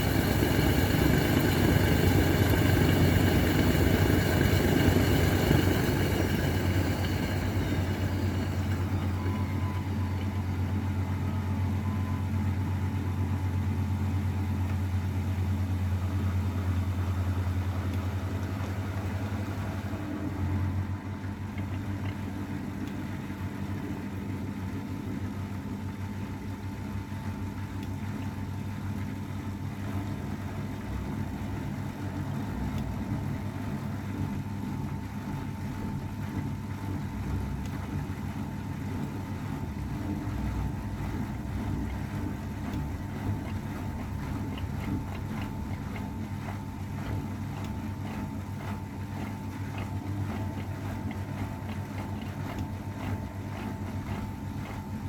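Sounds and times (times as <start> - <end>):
steady low hum: 0.0 - 14.2
washing machine motor whine: 0.0 - 55.0.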